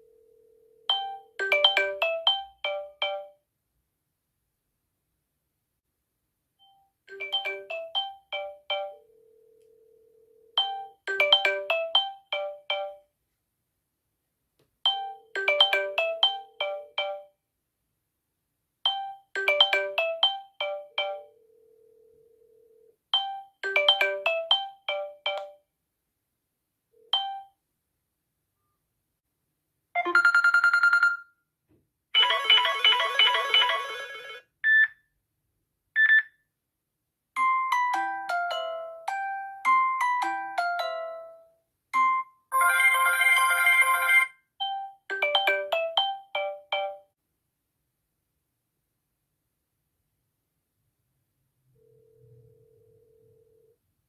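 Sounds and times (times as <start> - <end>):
bell-like ringtone melody: 0.9 - 3.4, 6.6 - 9.0, 10.6 - 13.0, 14.9 - 17.3, 18.9 - 21.4, 23.2 - 25.4, 32.2 - 34.4, 37.4 - 47.1.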